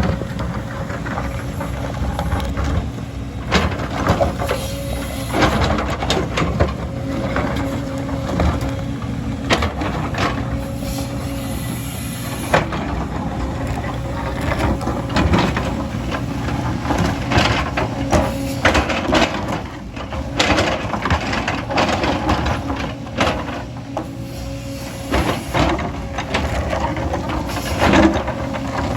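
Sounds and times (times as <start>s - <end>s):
diesel engine running: 0.0s - 28.9s
machine clanking on stones: 14.4s - 23.6s.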